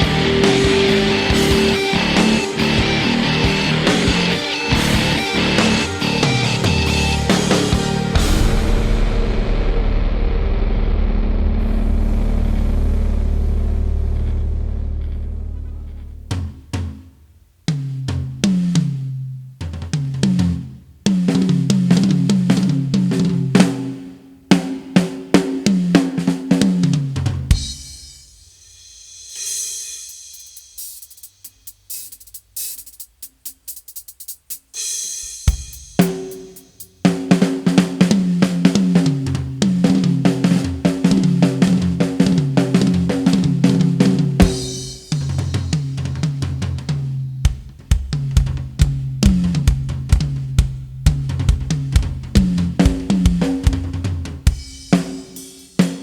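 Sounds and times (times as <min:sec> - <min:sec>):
drum kit: 0:00.0 - 0:11.0, 0:15.6 - 0:56.0
repeating bass line: 0:00.0 - 0:16.3.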